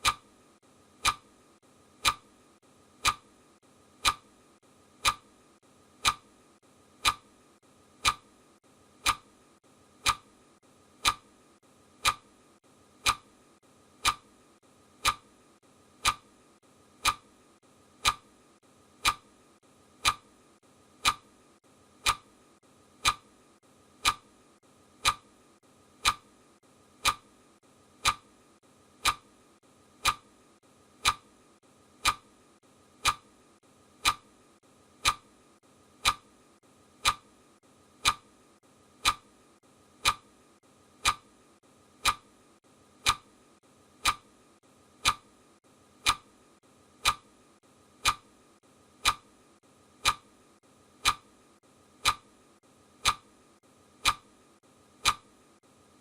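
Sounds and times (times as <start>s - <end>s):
clock ticking: 0.0s - 0.3s, 1.0s - 1.4s, 2.0s - 2.3s, 3.0s - 3.3s, 4.0s - 4.3s, 5.0s - 5.3s, 6.0s - 6.3s, 7.0s - 7.3s, 8.0s - 8.3s, 9.0s - 9.3s, 10.0s - 10.3s, 11.0s - 11.3s, 12.0s - 12.4s, 13.0s - 13.3s, 14.0s - 14.4s, 15.0s - 15.4s, 16.0s - 16.4s, 17.0s - 17.4s, 18.0s - 18.4s, 19.0s - 19.3s, 20.0s - 20.3s, 21.0s - 21.3s, 22.0s - 22.4s, 23.0s - 23.3s, 24.0s - 24.3s, 25.0s - 25.3s, 26.0s - 26.3s, 27.0s - 27.3s, 28.0s - 28.3s, 29.0s - 29.3s, 30.0s - 30.3s, 31.0s - 31.3s, 32.0s - 32.3s, 33.0s - 33.3s, 34.0s - 34.3s, 35.0s - 35.3s, 36.0s - 36.3s, 37.0s - 37.3s, 38.0s - 38.3s, 39.0s - 39.3s, 40.0s - 40.3s, 41.0s - 41.3s, 42.0s - 42.3s, 43.0s - 43.3s, 44.0s - 44.3s, 45.0s - 45.3s, 46.0s - 46.3s, 47.0s - 47.3s, 48.0s - 48.3s, 49.0s - 49.3s, 50.0s - 50.3s, 51.0s - 51.4s, 52.0s - 52.3s, 53.0s - 53.3s, 54.0s - 54.3s, 55.0s - 55.3s.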